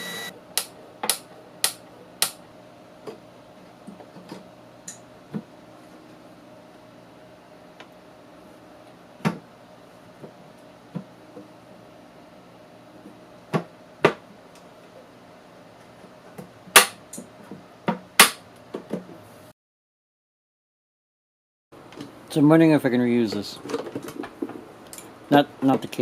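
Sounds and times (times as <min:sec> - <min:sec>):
faint steady hum: 0:00.0 - 0:17.6.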